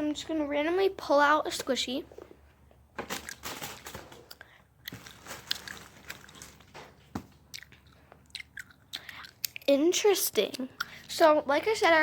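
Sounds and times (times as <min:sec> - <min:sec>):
plastic bag crinkling: 0:03.0 - 0:07.2.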